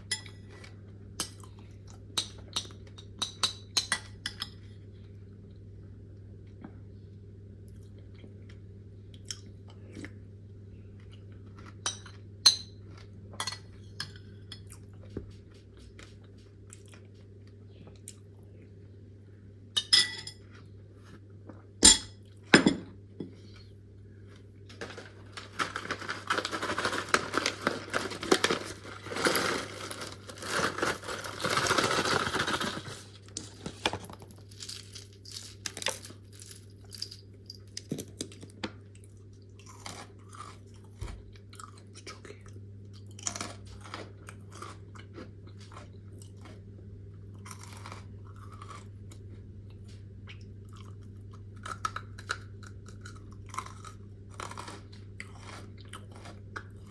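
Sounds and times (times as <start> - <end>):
crunching freeze-dried fruit: 24.7 - 37.1, 37.7 - 56.9.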